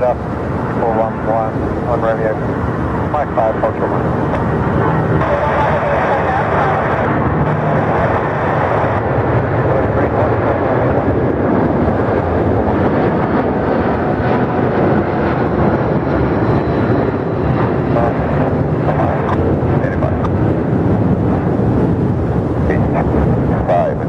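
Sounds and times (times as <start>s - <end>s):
jet engines rushing: 0.0s - 24.0s.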